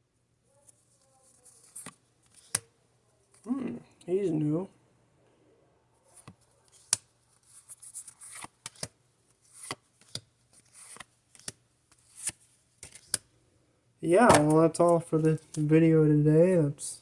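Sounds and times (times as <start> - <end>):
trading cards rustling: 0.6 - 2.7, 6.1 - 13.3, 14.2 - 15.8
cards clicking: 1.5 - 2.7, 6.2 - 13.3, 14.2 - 15.7.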